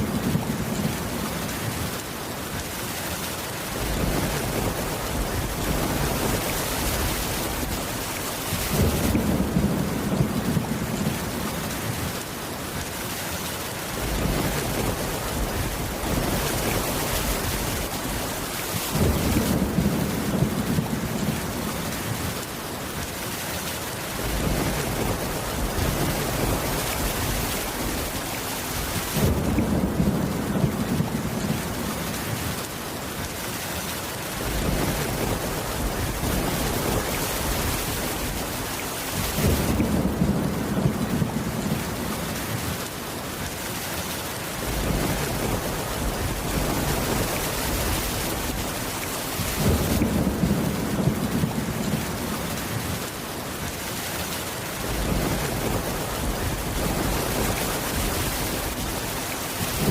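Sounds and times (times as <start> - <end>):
steady rain: 0.0 - 59.9
low thunder rumble: 18.9 - 22.4, 28.8 - 32.5, 34.4 - 42.7, 44.6 - 53.0, 54.8 - 59.9.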